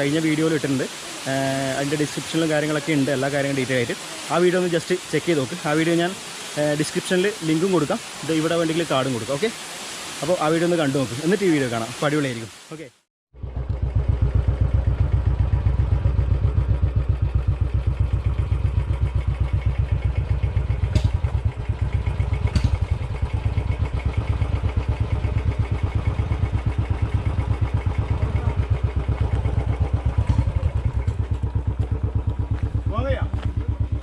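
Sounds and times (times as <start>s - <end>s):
motorcycle engine running: 13.3s - 34.0s.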